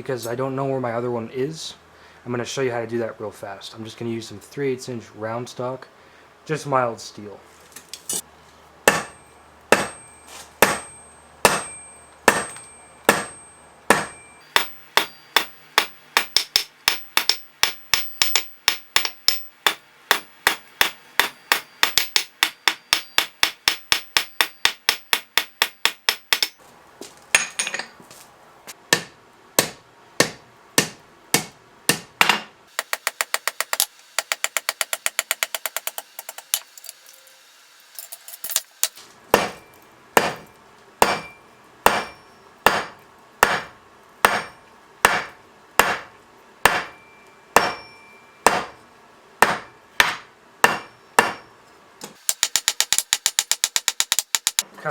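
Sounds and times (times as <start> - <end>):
hammer striking steel on anvil: 8.8 - 26.6, 28.9 - 35.9, 39.3 - 48.8, 49.4 - 54.7.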